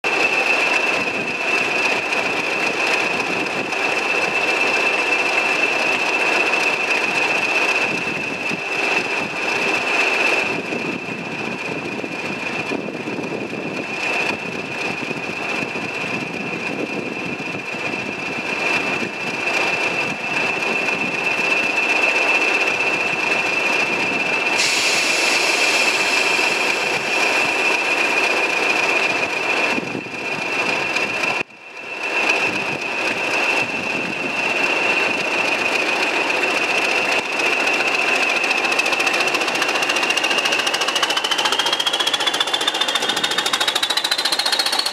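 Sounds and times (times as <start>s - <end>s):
diesel locomotive engines thrashing: 0.0s - 44.9s
high-pitched turbocharger whistle: 20.0s - 30.4s, 37.4s - 44.9s
hiss: 24.4s - 29.1s, 37.4s - 44.9s.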